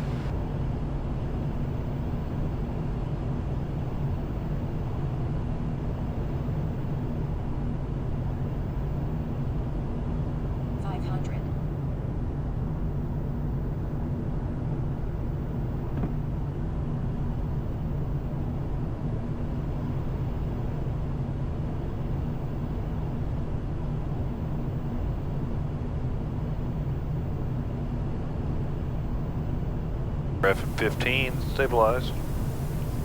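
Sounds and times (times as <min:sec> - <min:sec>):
jet engines humming: 0:00.0 - 0:00.3, 0:30.4 - 0:33.0.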